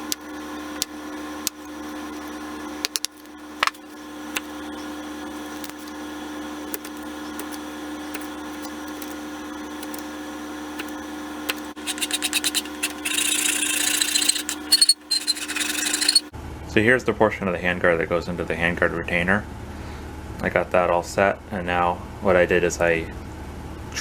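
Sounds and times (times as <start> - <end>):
small power tool humming: 10.8 - 16.3
wood rasping and sanding: 11.5 - 16.3.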